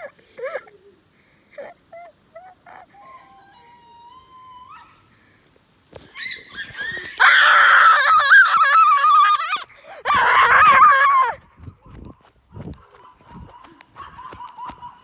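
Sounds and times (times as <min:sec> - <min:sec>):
boy screeching: 0:06.1 - 0:11.4.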